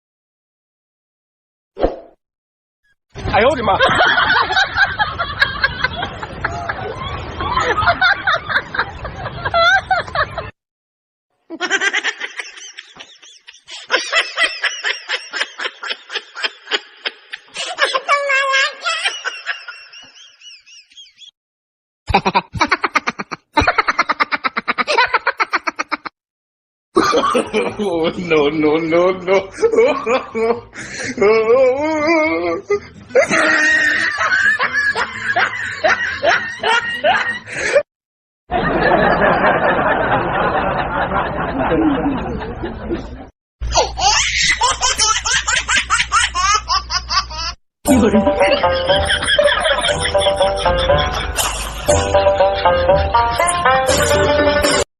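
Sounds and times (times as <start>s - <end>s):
high-pitched snickering laughter: 22.1s - 26.2s, 43.7s - 52.0s.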